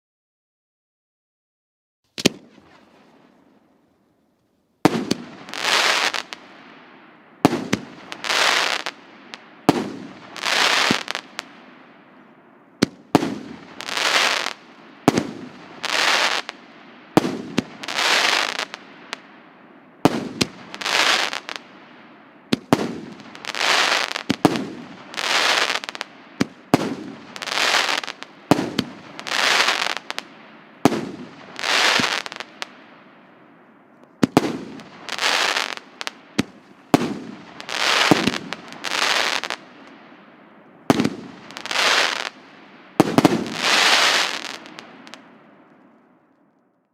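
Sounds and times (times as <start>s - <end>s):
firework bursts in the air: 4.9s - 6.4s, 9.6s - 11.5s, 20.1s - 21.6s, 22.5s - 30.3s, 30.9s - 32.6s, 34.2s - 39.6s, 40.9s - 42.4s, 43.0s - 45.2s.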